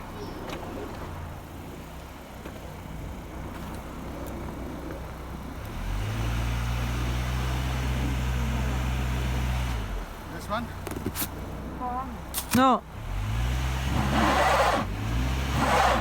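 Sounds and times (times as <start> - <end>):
car engine revving: 5.5 - 10.5, 12.9 - 16.0.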